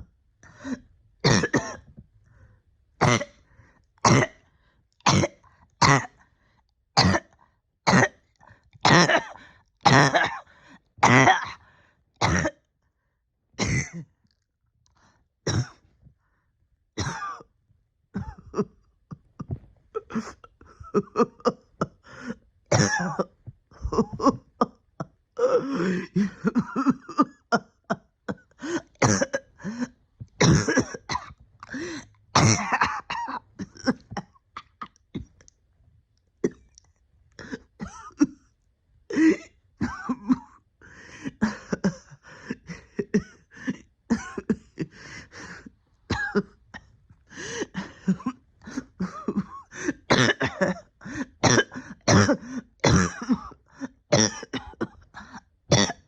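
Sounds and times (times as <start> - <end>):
person coughing: 1.2 - 2.0, 3.0 - 3.4, 4.0 - 4.4, 5.1 - 6.2, 8.9 - 11.6, 12.2 - 12.6, 13.6 - 14.1, 15.5 - 15.9, 17.0 - 17.5, 18.2 - 24.8, 25.4 - 35.4, 37.4 - 38.4, 39.1 - 40.6, 41.4 - 44.9, 46.1 - 56.0.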